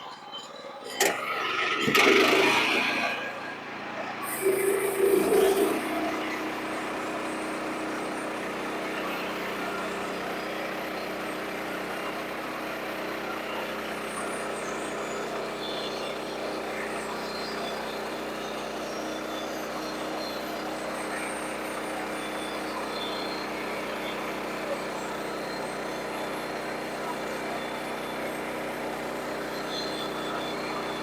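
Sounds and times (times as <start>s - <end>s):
sawmill motor hum: 0.9s - 31.0s.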